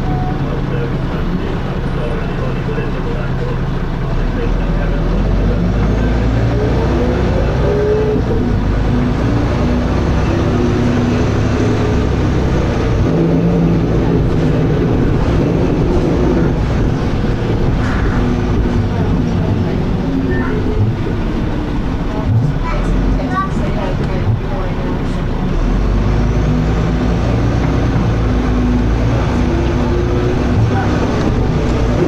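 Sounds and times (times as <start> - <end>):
bus engine drone: 0.0 - 32.0
drivetrain whine: 0.0 - 32.0.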